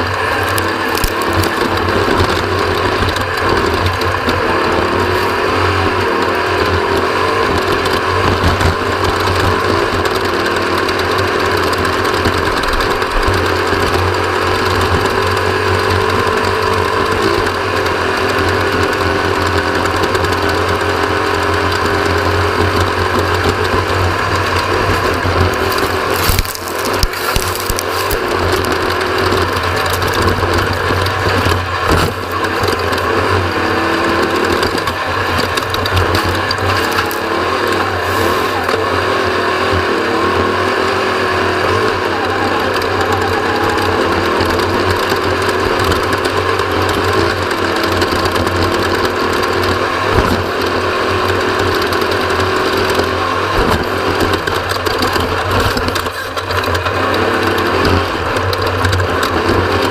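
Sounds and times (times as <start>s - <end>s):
bike chain rattling and clicking: 0.0s - 4.2s, 18.2s - 37.9s
tyres rolling on trail: 0.0s - 59.9s.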